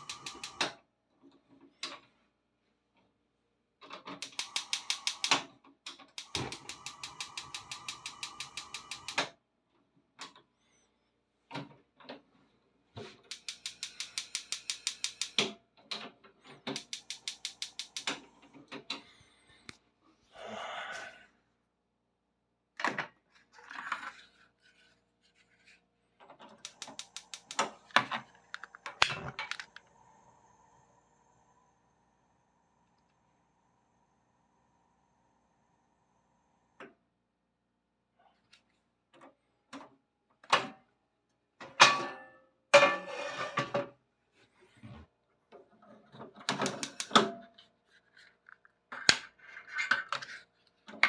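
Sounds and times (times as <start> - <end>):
stove igniter clicking: 0.0 - 0.8, 4.2 - 9.3, 13.2 - 15.5, 16.7 - 18.4, 26.6 - 29.9, 46.5 - 47.3.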